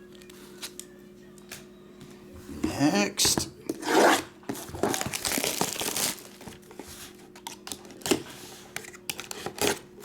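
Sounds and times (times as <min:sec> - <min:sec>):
packaging tearing and crinkling: 0:04.8 - 0:06.5.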